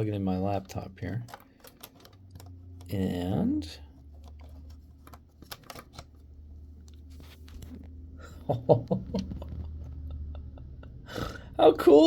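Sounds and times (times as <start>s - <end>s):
cable plug clicks and rustles: 0.7s - 3.0s, 4.0s - 7.9s.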